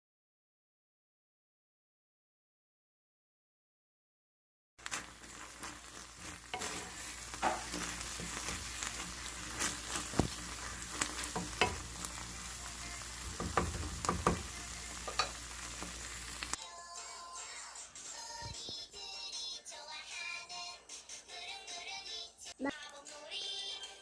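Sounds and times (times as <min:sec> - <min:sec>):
food sizzling in a frying pan: 0:04.8 - 0:16.6.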